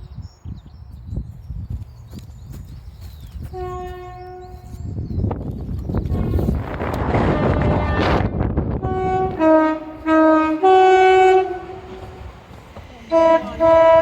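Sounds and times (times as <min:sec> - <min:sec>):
two-tone train horn: 0:03.5 - 0:04.8, 0:07.3 - 0:12.2, 0:13.1 - 0:14.0
train rumbling on track: 0:03.5 - 0:14.0.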